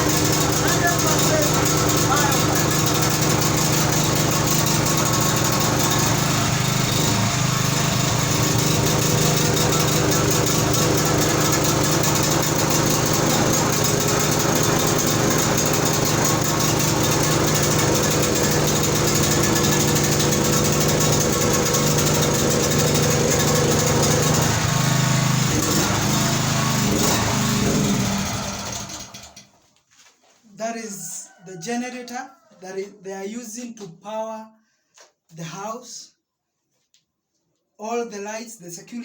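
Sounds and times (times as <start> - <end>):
generator engine running: 0.0 - 29.4.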